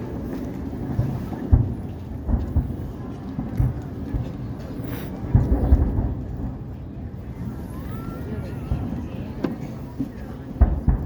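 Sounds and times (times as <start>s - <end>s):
fireworks booming: 0.1s - 7.5s, 10.5s - 11.0s.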